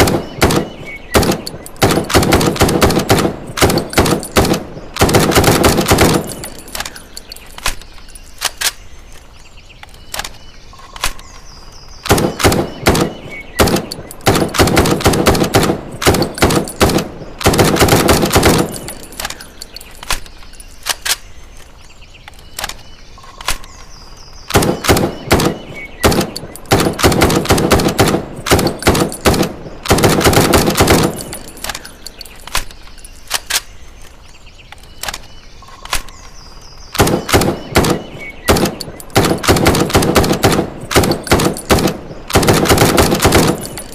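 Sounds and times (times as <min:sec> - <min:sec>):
rapid automatic rifle fire: 0:00.0 - 0:06.5, 0:12.1 - 0:18.9, 0:24.5 - 0:31.4, 0:37.0 - 0:43.9
scattered clicks: 0:00.0 - 0:43.9.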